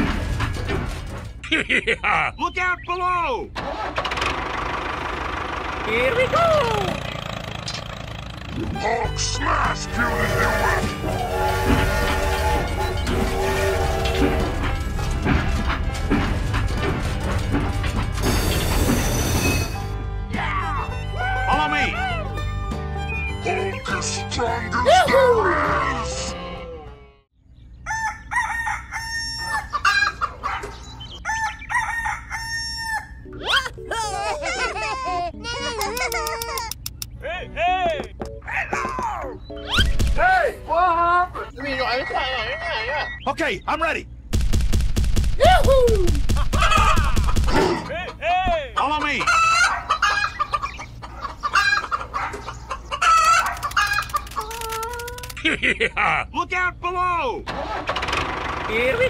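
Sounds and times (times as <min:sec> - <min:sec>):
chickens calling: 0:00.0 - 0:18.8, 0:25.9 - 0:44.3, 0:46.2 - 0:56.0.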